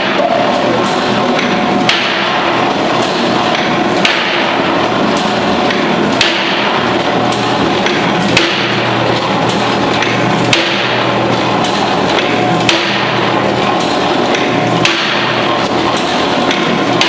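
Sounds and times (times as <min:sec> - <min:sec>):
press machine clattering: 0:00.0 - 0:17.0
sharp machine knocks: 0:00.0 - 0:17.0.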